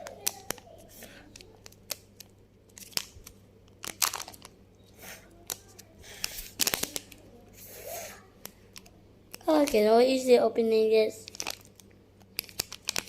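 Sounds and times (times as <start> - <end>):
packaging being torn and crinkled: 1.4 - 4.5, 6.5 - 7.2, 11.2 - 13.0.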